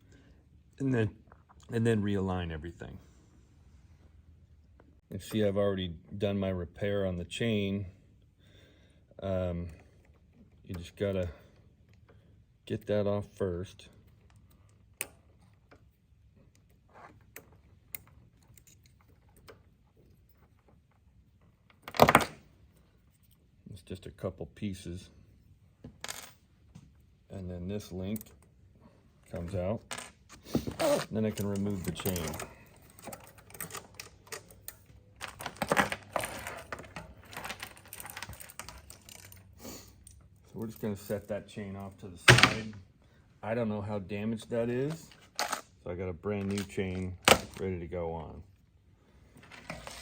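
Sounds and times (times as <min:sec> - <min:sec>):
bicycle chain clicking and rattling: 0:31.2 - 0:40.4.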